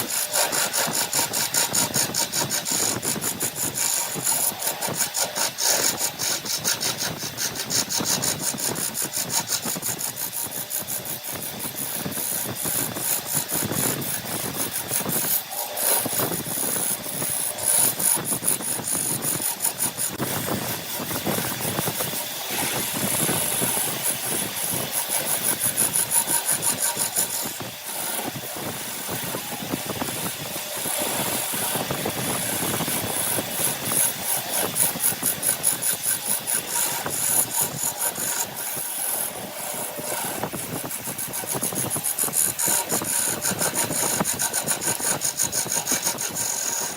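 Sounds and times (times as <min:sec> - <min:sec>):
power saw cutting wood: 0:00.0 - 0:46.9.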